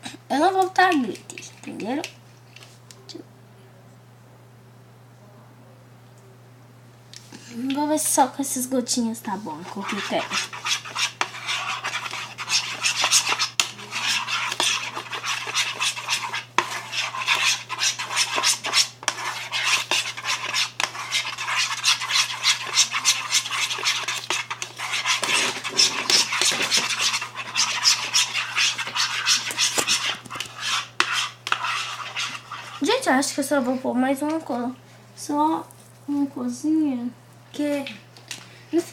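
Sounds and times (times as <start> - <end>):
spoon scraping a bowl: 9.5 - 33.5.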